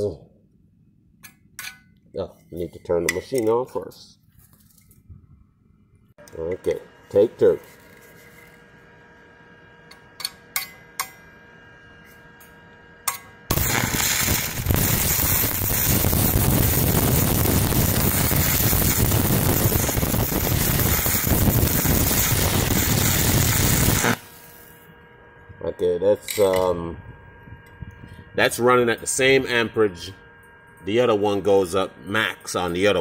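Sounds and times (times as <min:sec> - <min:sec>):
welding arc crackling: 0:13.5 - 0:24.8.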